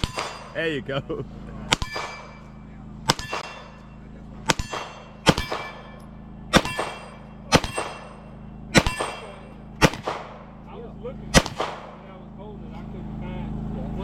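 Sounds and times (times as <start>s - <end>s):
pistol shots: 0.0s - 0.6s, 1.7s - 10.7s, 11.3s - 12.1s
steel target ringing: 0.0s - 12.2s.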